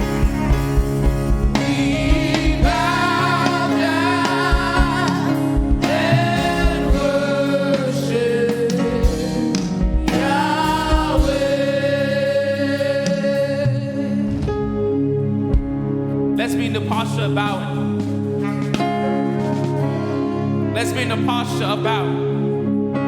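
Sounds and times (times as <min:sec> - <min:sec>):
voices singing held notes: 0:00.0 - 0:14.4
sustained chords: 0:00.0 - 0:23.0.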